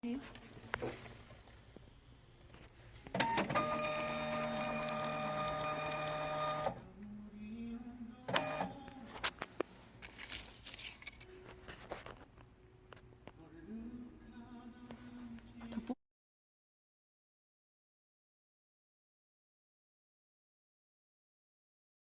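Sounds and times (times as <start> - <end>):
label printer clicks: 3.1 - 6.8, 8.3 - 8.7
printer motor whine: 3.2 - 6.8, 8.3 - 8.7.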